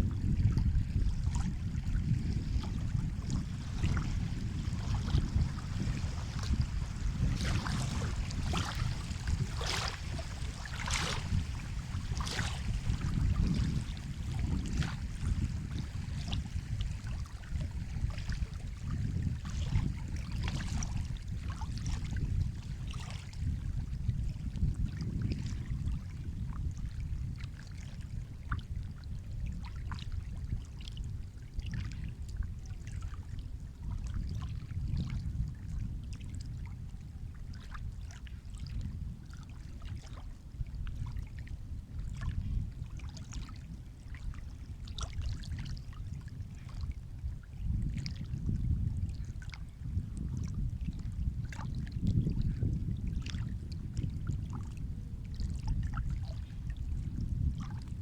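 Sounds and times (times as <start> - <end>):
sea water lapping: 0.4 - 26.6, 29.6 - 49.8, 53.2 - 53.6
small splashes and trickles: 2.6 - 22.3, 22.9 - 26.8, 27.6 - 33.4, 34.0 - 41.5, 42.1 - 48.6, 53.2 - 53.5.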